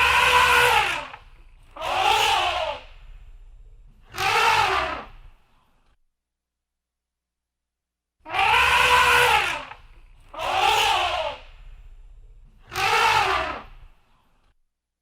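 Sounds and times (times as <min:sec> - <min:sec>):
animal calling: 0:00.0 - 0:05.4, 0:08.3 - 0:14.0.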